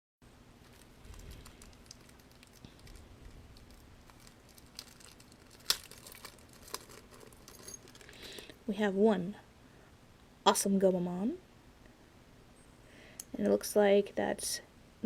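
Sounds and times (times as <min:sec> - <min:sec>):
plastic packaging crinkling: 0:00.6 - 0:08.5.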